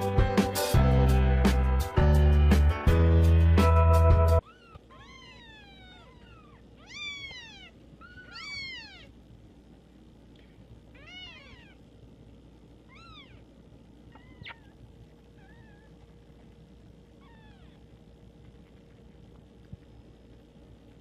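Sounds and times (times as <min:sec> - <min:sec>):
cat meowing: 0:04.4 - 0:09.1, 0:10.9 - 0:11.8, 0:12.9 - 0:13.4, 0:14.1 - 0:14.8, 0:15.4 - 0:16.0, 0:17.2 - 0:17.8.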